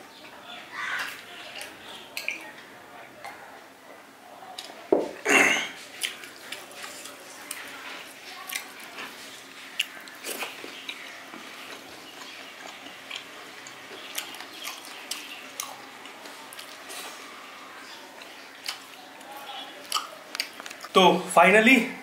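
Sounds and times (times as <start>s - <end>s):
person chewing with wet mouth sounds: 5.8s - 21.0s.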